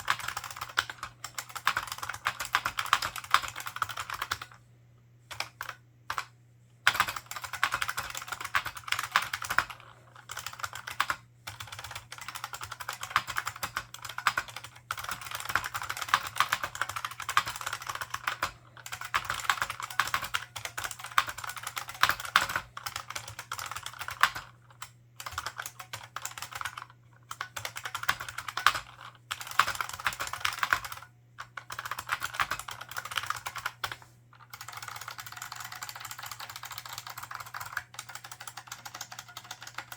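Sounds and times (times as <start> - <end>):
keyboard keystrokes clacking: 0.0 - 4.5, 25.2 - 39.9.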